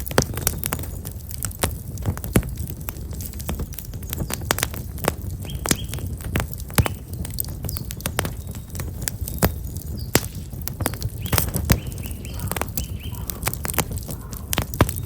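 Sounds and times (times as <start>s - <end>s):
firewood crackling and popping: 0.0s - 15.0s
small birds chirping: 3.6s - 15.0s.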